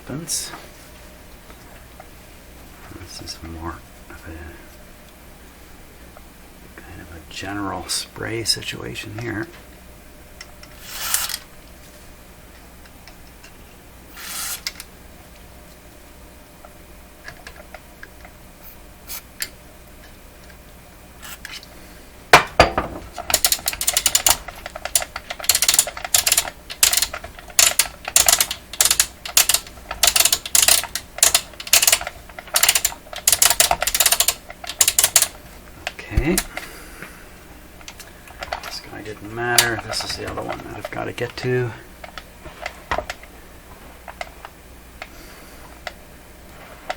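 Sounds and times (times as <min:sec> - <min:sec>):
spray can bursts: 0:14.1 - 0:14.7
rotary switch clicking: 0:23.3 - 0:36.6.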